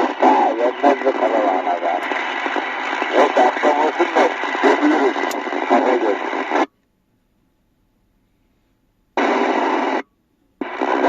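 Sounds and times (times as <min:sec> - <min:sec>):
radio hiss: 0:00.0 - 0:06.7, 0:09.1 - 0:11.0
voice through radio speaker: 0:00.0 - 0:06.7, 0:10.6 - 0:11.0.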